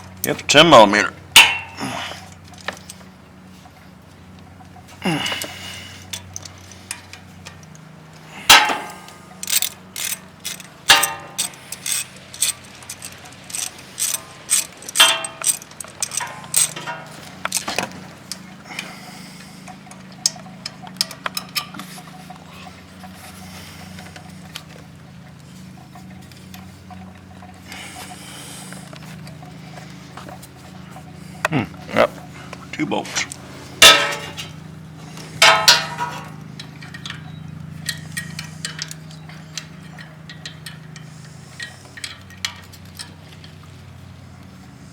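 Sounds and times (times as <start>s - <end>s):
ratchet wrench clicking: 8.5s - 17.6s.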